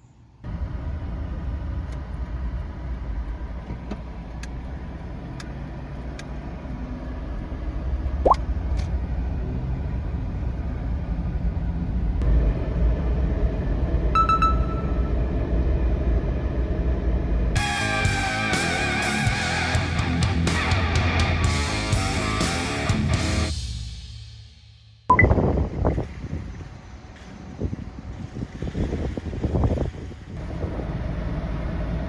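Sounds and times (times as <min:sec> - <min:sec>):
van road and engine rumble: 0:00.1 - 0:24.1, 0:25.4 - 0:32.0.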